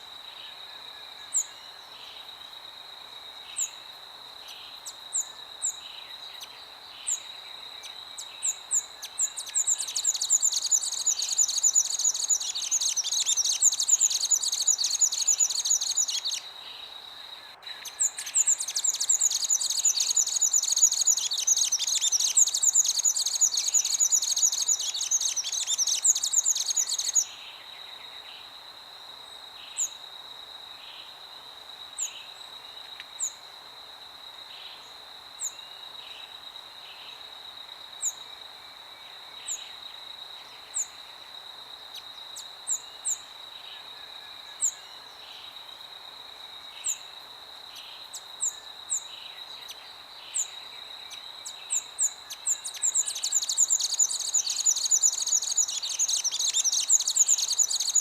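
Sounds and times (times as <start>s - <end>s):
high bird chirps: 17.8s - 27.3s.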